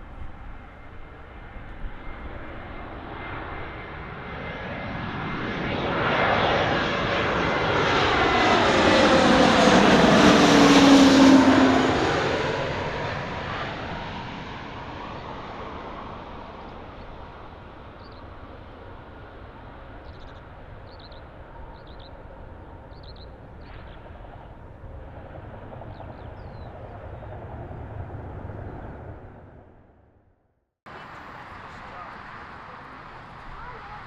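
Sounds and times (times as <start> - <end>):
jet engine rumble: 0.0 - 30.2, 30.9 - 34.0
small bird chirping: 18.0 - 18.3, 20.0 - 22.2, 22.9 - 24.0.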